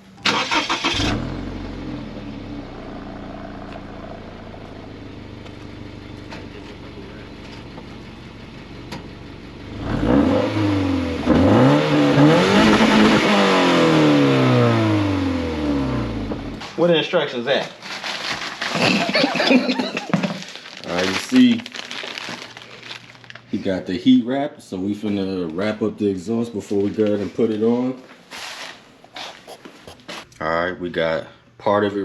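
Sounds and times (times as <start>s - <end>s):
car engine idling: 0.1s - 9.9s
car engine revving: 0.3s - 16.6s.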